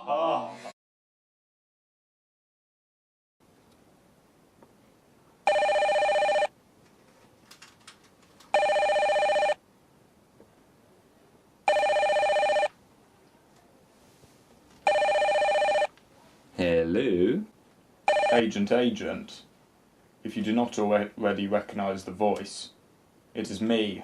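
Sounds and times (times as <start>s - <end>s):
telephone two-tone ringing: 5.5s - 6.5s, 8.5s - 9.6s, 11.7s - 12.7s, 14.8s - 15.9s, 18.1s - 18.4s.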